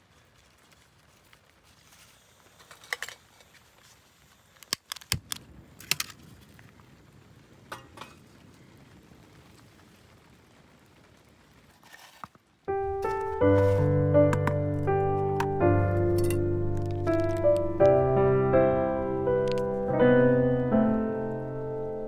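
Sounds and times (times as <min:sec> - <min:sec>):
small hard objects clinking: 0:13.0 - 0:18.0.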